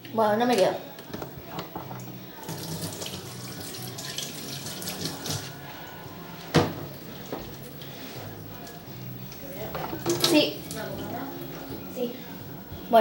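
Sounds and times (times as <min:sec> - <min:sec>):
tap water splashing into sink: 0:09.9 - 0:10.9.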